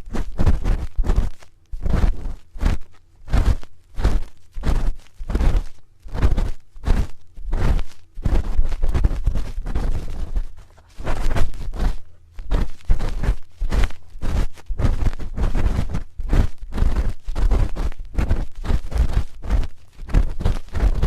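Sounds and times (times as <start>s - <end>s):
spoon scraping microphone: 0.0s - 21.0s.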